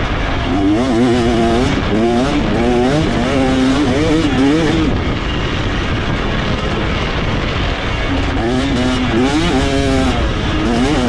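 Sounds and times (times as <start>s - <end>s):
two-stroke motocross engine revving: 0.0s - 11.0s.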